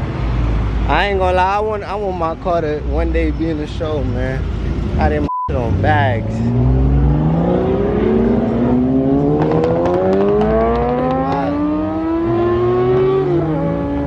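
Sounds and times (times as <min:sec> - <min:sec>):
car engine accelerating: 0:04.7 - 0:14.0.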